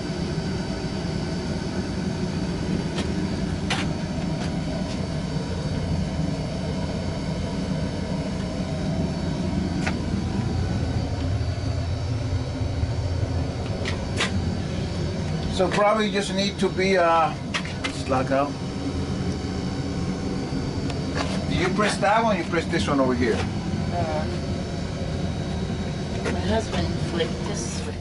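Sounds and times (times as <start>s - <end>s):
low mechanical rumble and hum: 0.0s - 28.0s.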